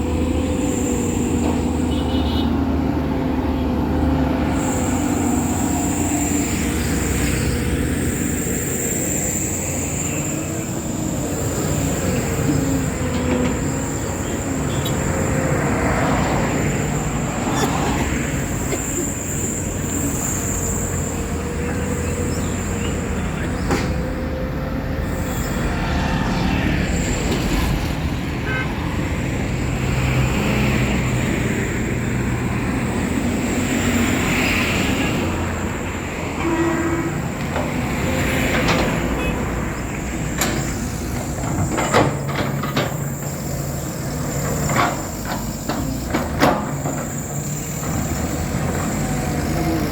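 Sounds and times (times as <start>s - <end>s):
highway traffic passing: 0.0s - 49.9s
car horns tooting: 28.4s - 28.9s, 36.3s - 37.4s.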